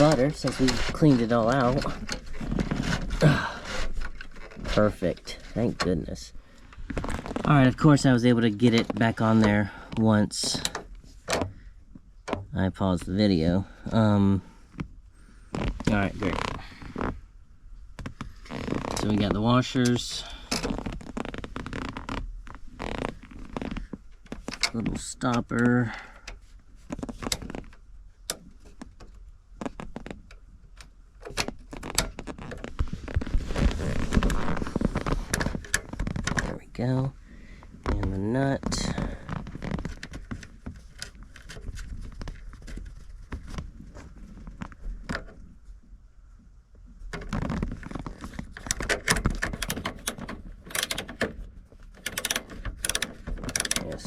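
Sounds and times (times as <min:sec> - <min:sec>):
metallic clatter: 0:48.7 - 0:54.0
ratcheting wrench clicking: 0:49.4 - 0:51.3, 0:52.0 - 0:53.9
small metal parts clinking: 0:49.5 - 0:51.3, 0:52.0 - 0:54.0.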